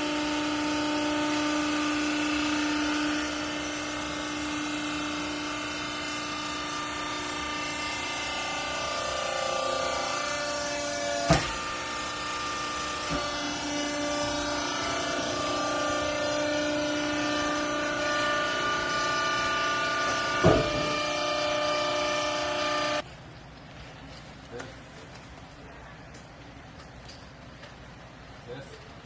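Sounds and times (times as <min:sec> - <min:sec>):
hydraulic pump motor whine: 0:00.0 - 0:23.0
sharp clunks: 0:20.1 - 0:21.1.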